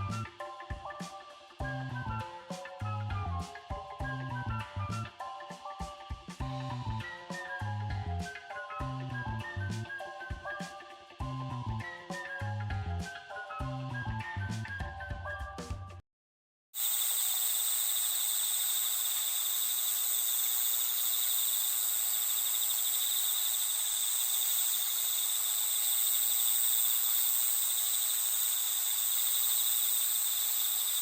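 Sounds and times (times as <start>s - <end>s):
music: 0.0s - 16.0s
crickets chirping: 16.8s - 31.0s.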